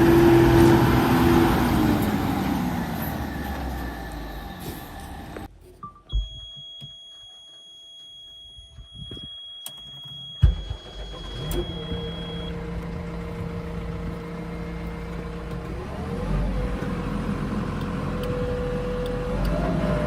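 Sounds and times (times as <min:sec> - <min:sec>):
heavy diesel engine running: 0:00.0 - 0:05.5, 0:10.6 - 0:20.0.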